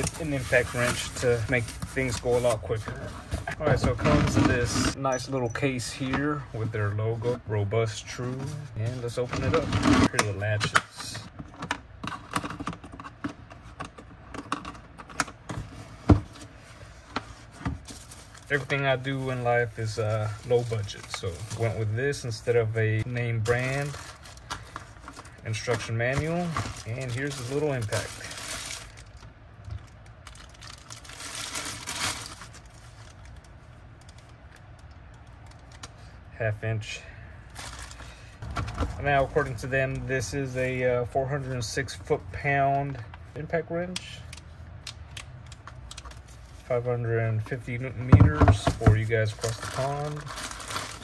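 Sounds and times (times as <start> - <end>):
packaging rustling: 17.4 - 22.3, 23.0 - 35.8, 37.5 - 39.6, 48.7 - 51.0.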